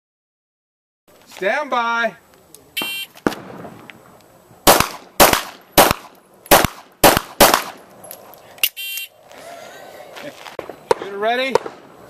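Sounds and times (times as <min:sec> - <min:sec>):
pistol shots: 0:02.8 - 0:03.9, 0:04.6 - 0:07.9, 0:10.6 - 0:12.0.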